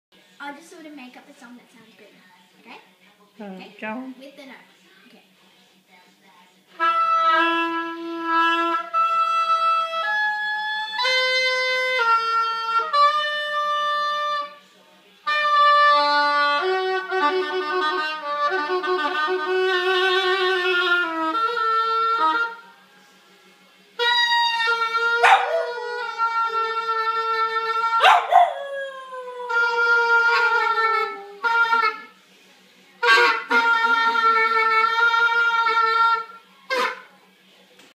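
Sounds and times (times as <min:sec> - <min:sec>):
oboe playing held notes: 0:06.8 - 0:14.6, 0:15.2 - 0:22.7, 0:24.0 - 0:32.2, 0:33.0 - 0:37.1
puppy howling: 0:25.1 - 0:26.4, 0:27.1 - 0:31.5
puppy yelps: 0:25.2 - 0:25.9, 0:28.0 - 0:28.6.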